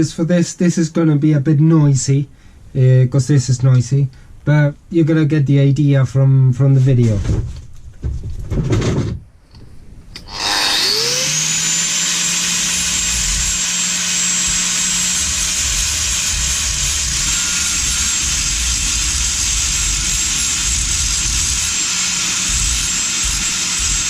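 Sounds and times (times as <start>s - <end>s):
angle grinder grinding metal: 10.2s - 24.0s.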